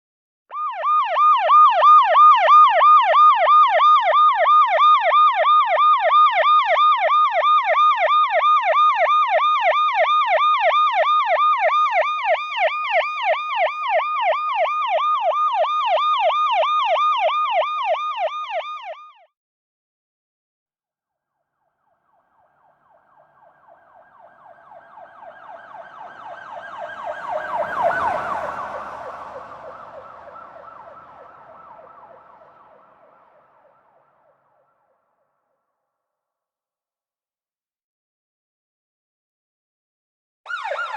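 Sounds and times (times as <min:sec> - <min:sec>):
passing emergency vehicle siren: 0:00.5 - 0:19.2, 0:21.2 - 0:34.9, 0:40.5 - 0:40.9
siren yelping: 0:21.6 - 0:34.7, 0:40.5 - 0:40.9
road noise: 0:21.9 - 0:34.4.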